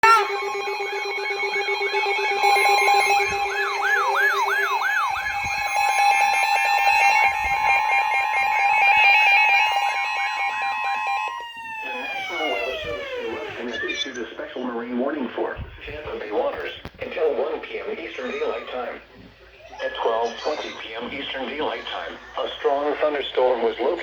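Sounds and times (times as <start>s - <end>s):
rising and falling siren sweeps: 0.0s - 14.1s
rapid electronic beeping: 0.0s - 14.8s
steady alarm tones: 0.0s - 14.9s.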